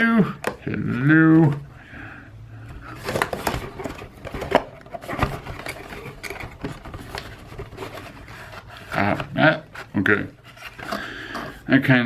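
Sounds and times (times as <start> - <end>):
packaging crinkling and rustling: 2.8 - 11.6.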